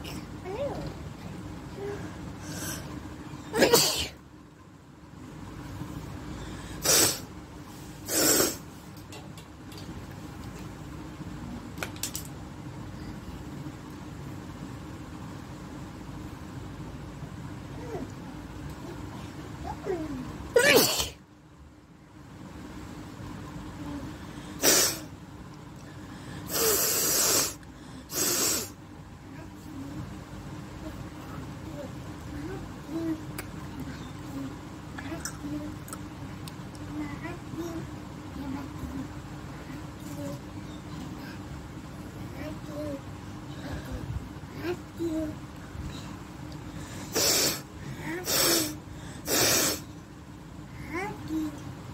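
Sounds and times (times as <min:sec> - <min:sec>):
woman sneezing: 0:03.5 - 0:04.2, 0:20.6 - 0:21.2, 0:24.6 - 0:25.1
woman blowing air through nose: 0:06.8 - 0:07.2, 0:08.0 - 0:08.6, 0:24.6 - 0:25.0, 0:26.5 - 0:28.8, 0:47.0 - 0:47.7, 0:48.3 - 0:49.9.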